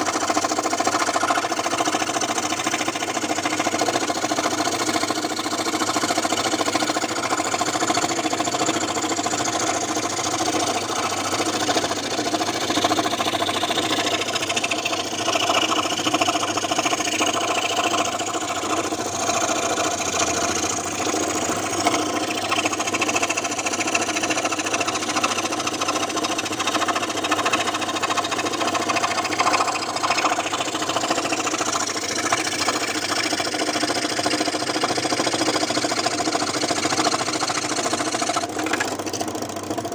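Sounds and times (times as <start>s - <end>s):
scroll saw running: 0.0s - 39.9s.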